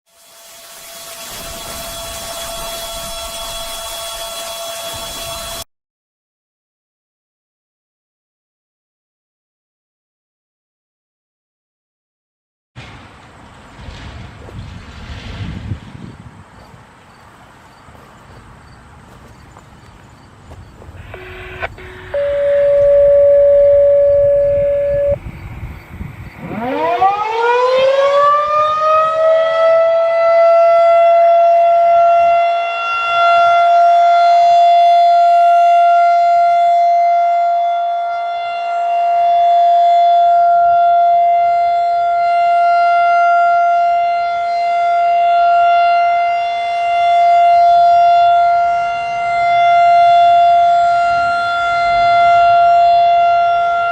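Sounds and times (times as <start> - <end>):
short steady tone: 0.2 - 5.7, 21.0 - 25.3
rotating siren wailing: 0.4 - 5.6, 21.0 - 25.2, 26.4 - 53.9.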